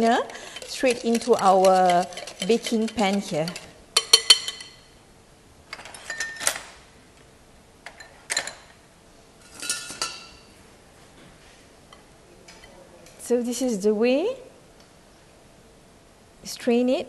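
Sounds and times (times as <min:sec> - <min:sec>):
metal kitchenware clinking: 0:00.0 - 0:04.9, 0:05.8 - 0:06.7, 0:07.9 - 0:08.8, 0:09.4 - 0:10.6.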